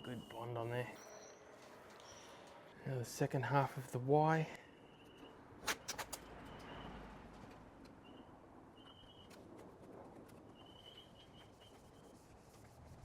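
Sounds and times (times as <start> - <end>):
faint high bird calls: 0.0 - 2.7, 8.0 - 9.4, 10.5 - 12.2.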